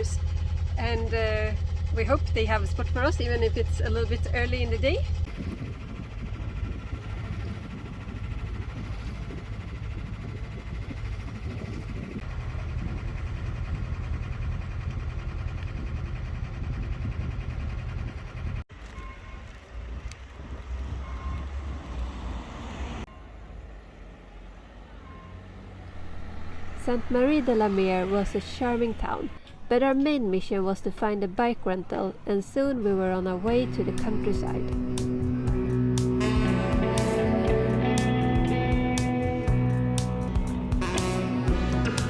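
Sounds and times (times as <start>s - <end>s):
boat engine humming: 0.0s - 23.0s, 25.1s - 42.0s
wind noise: 5.1s - 14.6s, 15.6s - 18.6s, 19.3s - 22.2s.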